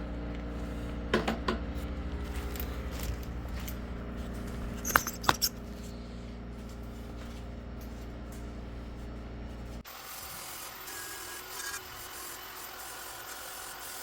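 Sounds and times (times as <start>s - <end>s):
steady low hum: 0.0s - 9.9s
metal tools clinking: 2.2s - 5.9s.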